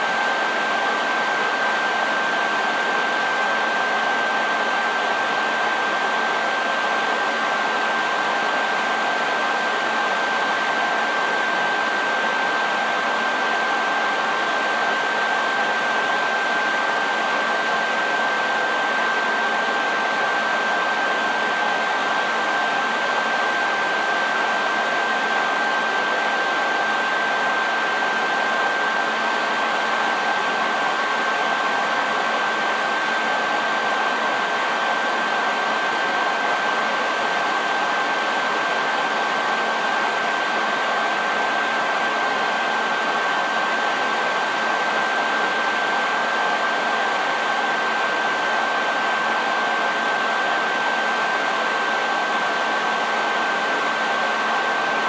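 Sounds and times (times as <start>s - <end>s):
hair dryer running: 24.4s - 55.0s.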